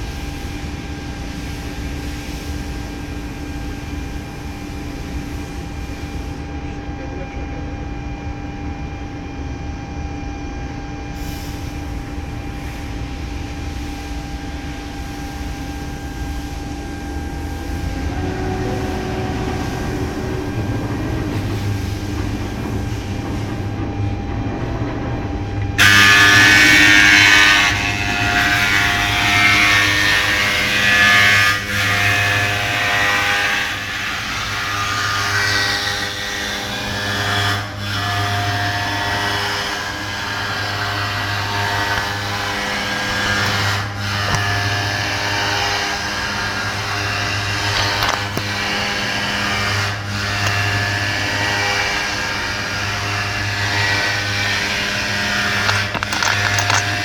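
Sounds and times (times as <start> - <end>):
milling machine humming: 14.3 - 30.1, 46.0 - 57.0
loud grinding cutting noise: 15.9 - 22.8, 25.8 - 57.0.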